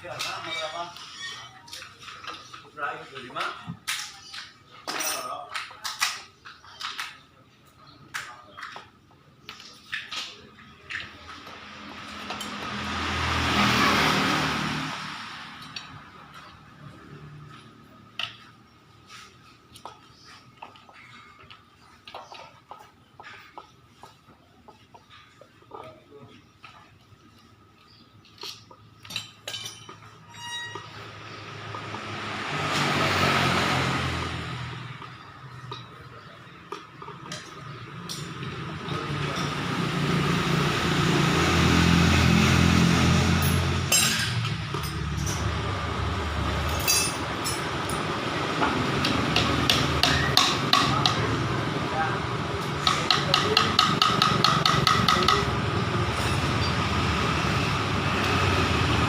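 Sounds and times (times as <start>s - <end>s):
short metallic squeak: 0.4s - 1.6s, 30.2s - 31.4s
motor vehicle passing by: 10.7s - 20.4s, 29.9s - 59.0s.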